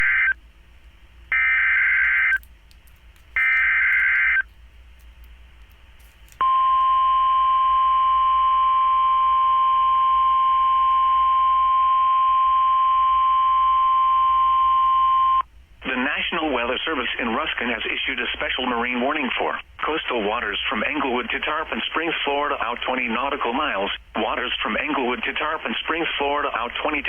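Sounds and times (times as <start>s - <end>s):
steady alarm tone: 1.3s - 2.4s, 3.4s - 4.5s, 6.4s - 11.9s
buzzing data bursts: 3.4s - 4.5s.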